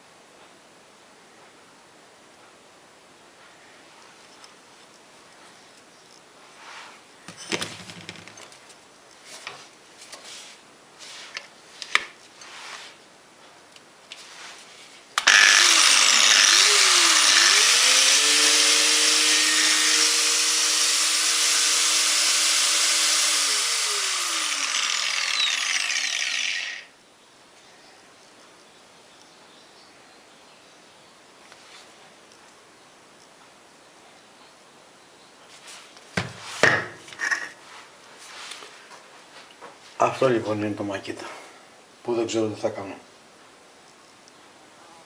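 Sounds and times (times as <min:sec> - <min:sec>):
angle grinder running: 0:15.2 - 0:26.9.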